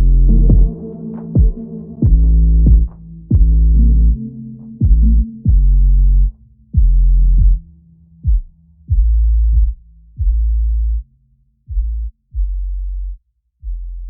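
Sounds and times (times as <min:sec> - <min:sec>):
electronic deep bass notes sliding down: 0:00.0 - 0:11.0.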